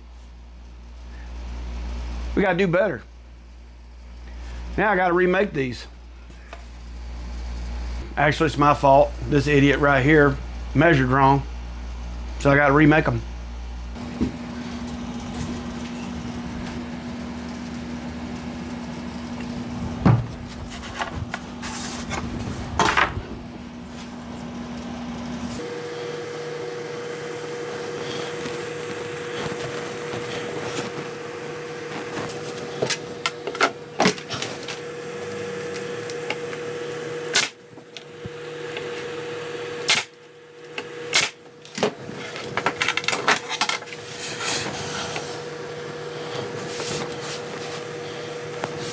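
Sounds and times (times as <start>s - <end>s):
steady machine hum: 0.0s - 48.9s
wood pieces and tools knocking: 20.0s - 21.5s, 22.8s - 23.3s.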